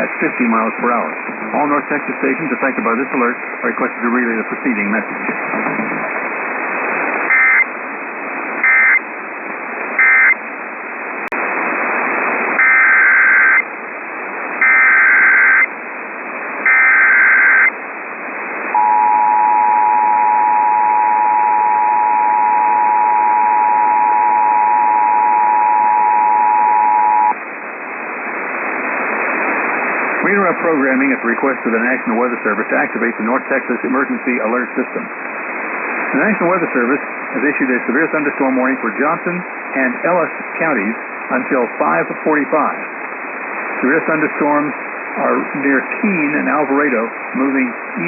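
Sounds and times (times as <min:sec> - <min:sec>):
radio static hiss: 0:00.0 - 0:48.0
two-tone attention signal: 0:18.8 - 0:27.4.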